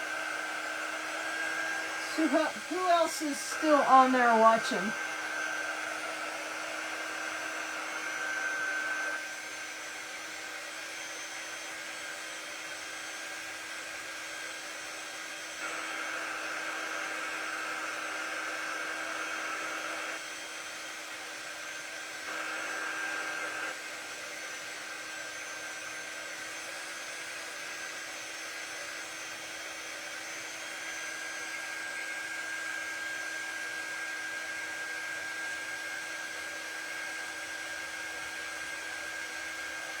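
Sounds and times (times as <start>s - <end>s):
small blower whining: 0.0s - 40.0s.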